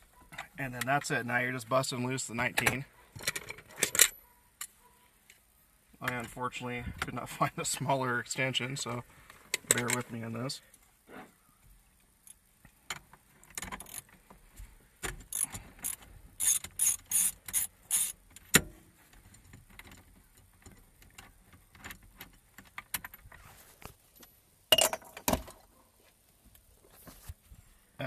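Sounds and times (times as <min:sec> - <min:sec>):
socket ratchet clicking: 0:15.2 - 0:18.7.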